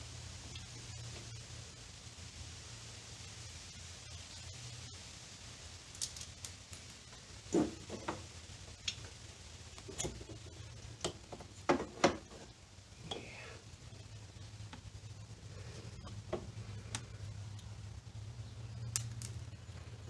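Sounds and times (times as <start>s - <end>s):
low steady hum: 0.0s - 20.0s
metallic clinks of hand tools: 6.0s - 7.1s.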